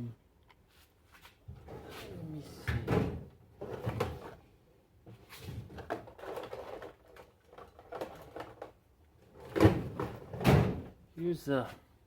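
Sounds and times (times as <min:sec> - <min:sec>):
objects clattering and rustling: 0:01.4 - 0:11.0.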